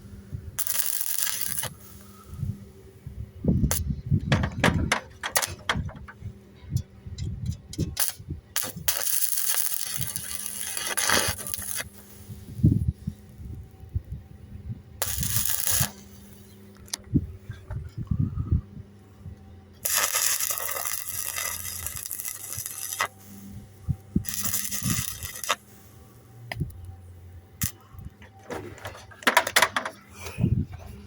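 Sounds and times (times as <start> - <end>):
welding arc crackling: 0.0 - 2.4, 7.7 - 14.2, 15.0 - 17.1, 19.7 - 28.2.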